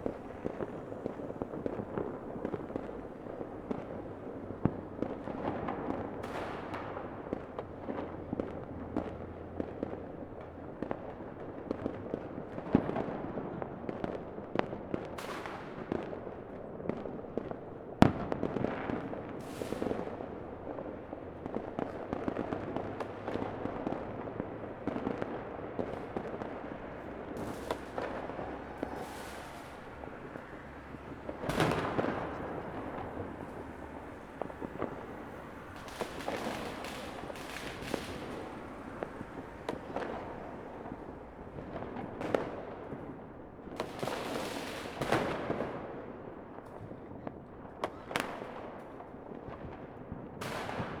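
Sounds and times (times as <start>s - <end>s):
fireworks popping and crackling: 0.0s - 51.0s
sharp firework bang: 27.1s - 30.4s, 31.1s - 40.4s.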